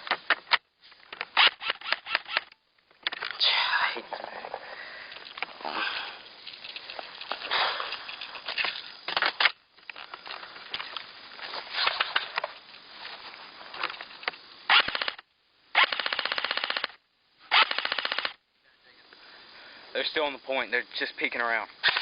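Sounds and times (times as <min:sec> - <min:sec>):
airsoft rifle full-auto bursts: 0:14.7 - 0:15.2, 0:15.8 - 0:18.4.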